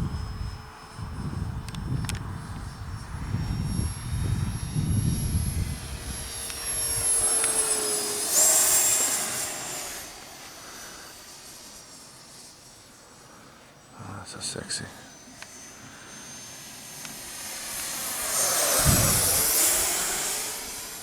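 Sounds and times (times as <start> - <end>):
model jet fan whining: 0.0 - 21.0.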